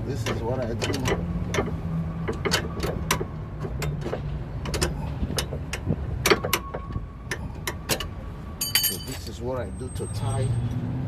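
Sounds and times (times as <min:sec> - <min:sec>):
hand tools clinking on metal: 0:08.6 - 0:09.4.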